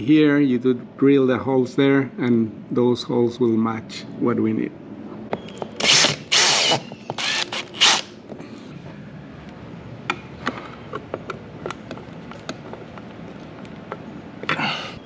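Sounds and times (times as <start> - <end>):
power drill drilling: 5.8 - 8.1.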